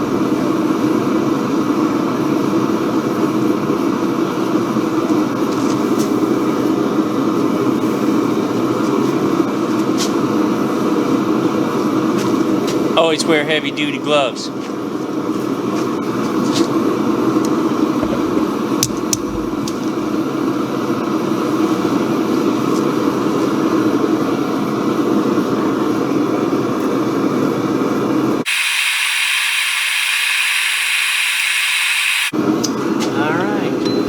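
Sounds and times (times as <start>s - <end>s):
gas torch flame roaring: 16.7s - 23.9s, 28.2s - 32.8s.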